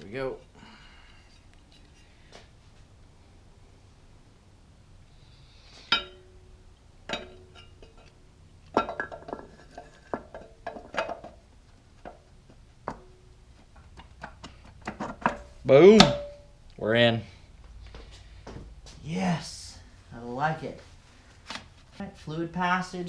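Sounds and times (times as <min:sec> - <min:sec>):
metal clinks and knocks: 0:07.0 - 0:16.6.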